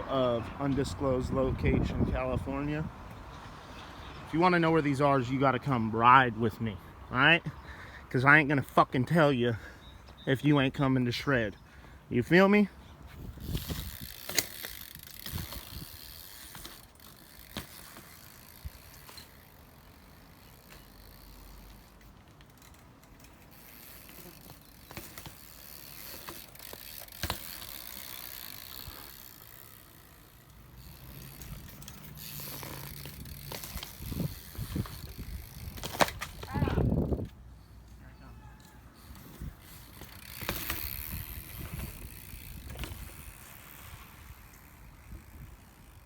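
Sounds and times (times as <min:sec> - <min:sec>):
bike hub ratcheting: 0:13.2 - 0:37.4, 0:39.1 - 0:46.0
sharp knocks from bike: 0:26.1 - 0:28.1, 0:34.8 - 0:36.6, 0:40.0 - 0:41.9.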